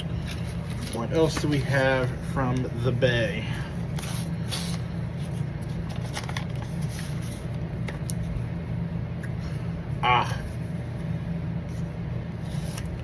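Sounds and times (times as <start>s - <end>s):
packaging crinkling: 3.9s - 8.2s.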